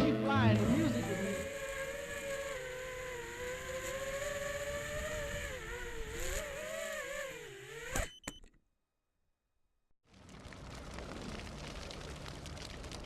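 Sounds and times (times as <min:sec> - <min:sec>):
quadcopter motors whining: 0:00.0 - 0:08.4.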